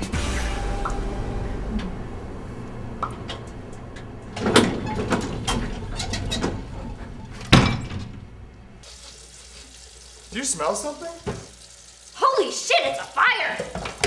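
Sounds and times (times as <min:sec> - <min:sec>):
heavy door thuds: 0:00.0 - 0:08.5.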